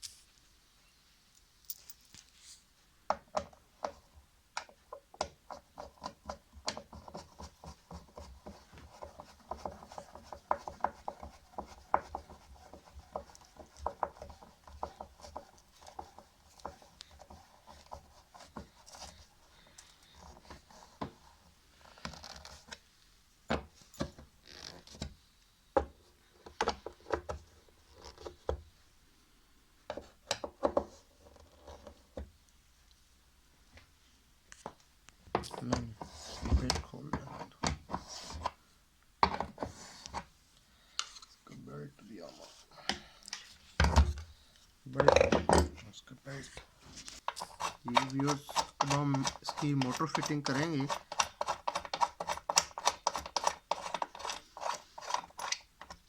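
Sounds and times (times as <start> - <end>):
hand tools knocking on metal parts: 47.6 - 53.5.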